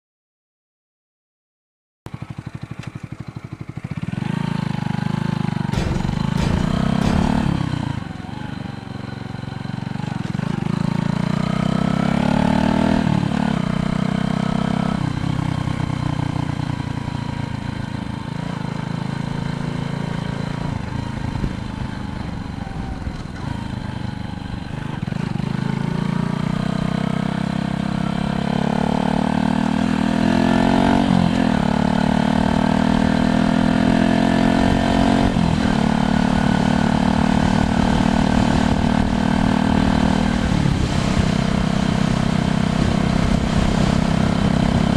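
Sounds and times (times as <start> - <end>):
engine accelerating through gears: 9.7 - 44.9.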